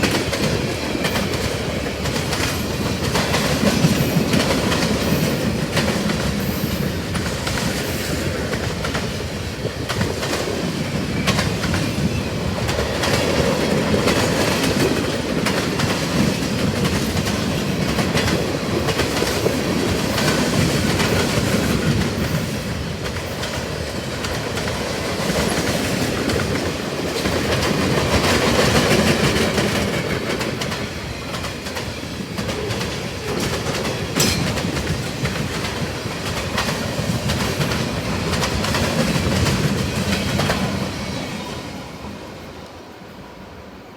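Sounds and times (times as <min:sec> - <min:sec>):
freight train cars rolling: 0:00.0 - 0:43.4
wheels clicking over rail joints: 0:23.0 - 0:40.9.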